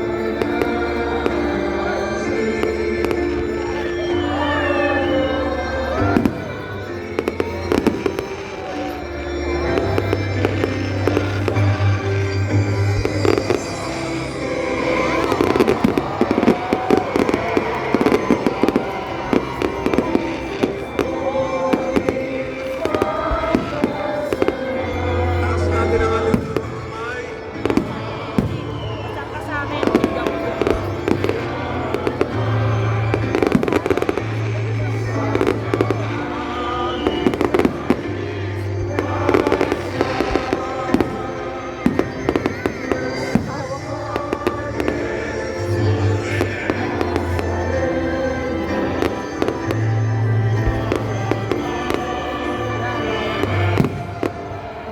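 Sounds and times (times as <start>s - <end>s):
fireworks bangs and crackles: 0.0s - 54.9s
music playing: 0.0s - 54.9s
fireworks cracking and popping: 7.2s - 9.0s.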